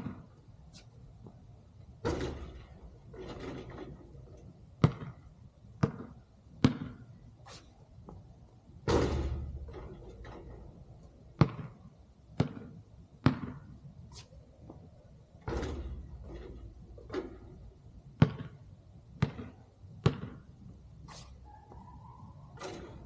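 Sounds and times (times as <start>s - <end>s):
ball hitting rim and backboard: 0.0s - 0.3s, 2.0s - 8.2s, 8.8s - 13.7s, 15.4s - 20.5s, 22.5s - 23.0s
basketball bouncing on court: 0.0s - 0.4s, 2.0s - 4.0s, 4.8s - 7.2s, 8.8s - 10.6s, 11.3s - 13.7s, 15.4s - 20.7s.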